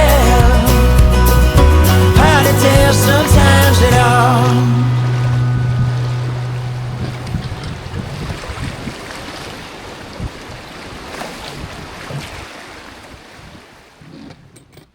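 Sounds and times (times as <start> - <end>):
river water rushing: 2.0 - 14.0
wind buffeting microphone: 4.9 - 13.6.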